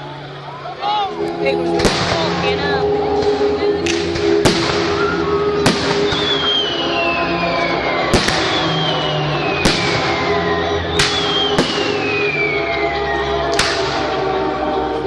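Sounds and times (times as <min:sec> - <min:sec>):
music playing: 0:00.0 - 0:15.0
fireworks exploding: 0:01.0 - 0:14.3
firework whistle falling in pitch: 0:04.3 - 0:14.2.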